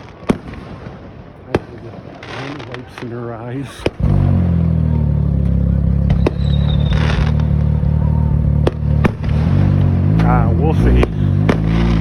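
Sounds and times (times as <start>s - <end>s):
car engine idling: 3.6s - 12.0s.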